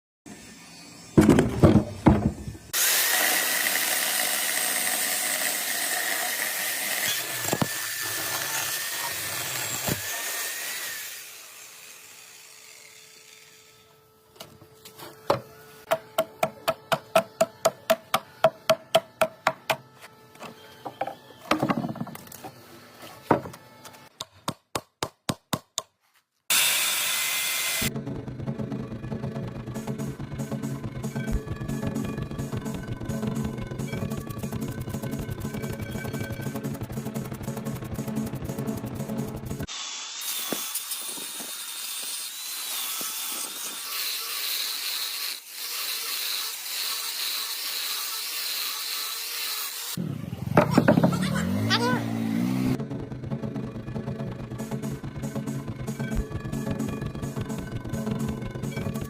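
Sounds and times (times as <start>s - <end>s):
power tool whining on wood: 2.7s - 24.0s, 39.6s - 52.8s
background music: 27.9s - 39.7s, 50.0s - 59.0s.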